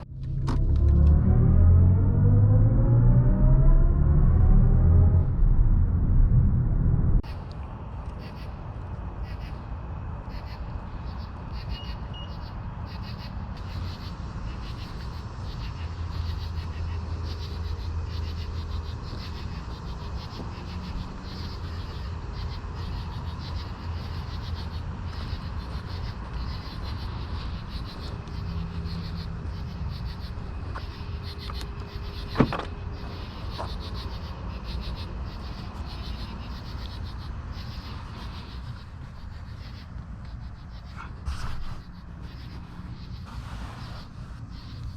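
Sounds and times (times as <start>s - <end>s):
road and tyre rumble: 0.0s - 44.9s
faint steady tone: 10.3s - 40.9s.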